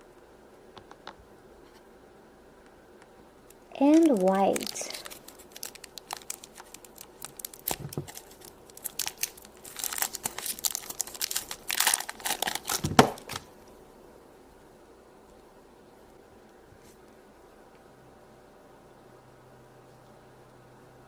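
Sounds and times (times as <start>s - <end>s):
packaging crinkling and tearing: 3.7s - 13.5s.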